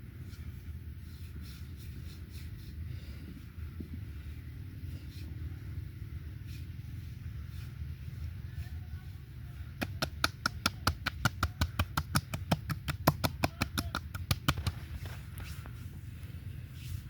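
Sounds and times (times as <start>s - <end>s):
steady low hum: 0.0s - 17.0s
hands slapping body: 9.8s - 14.9s.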